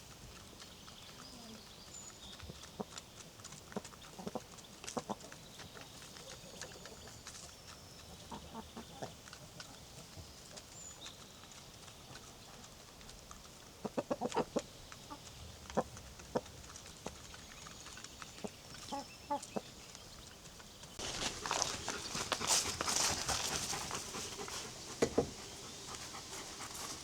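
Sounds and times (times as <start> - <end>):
small birds chirping: 0.0 - 27.0
chickens clucking: 2.3 - 27.0.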